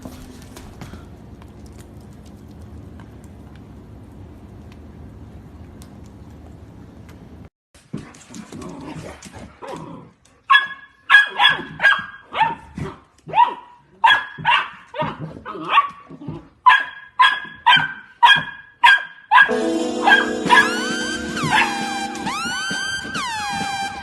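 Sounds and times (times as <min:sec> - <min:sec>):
dog barking: 0:10.5 - 0:16.0, 0:16.6 - 0:19.5.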